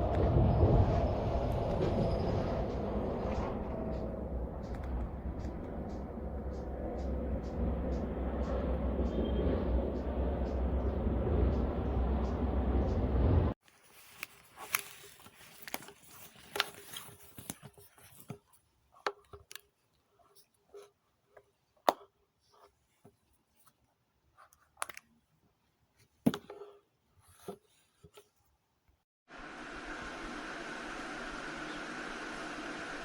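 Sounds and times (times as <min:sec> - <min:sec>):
loud steady rushing noise: 0:00.0 - 0:13.6.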